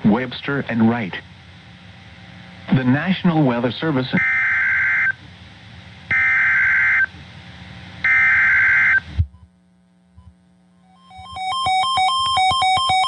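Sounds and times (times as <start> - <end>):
radio static hissing: 0.0 - 11.6
faint low hum: 0.0 - 13.0
warbling digital data tones: 10.9 - 13.0.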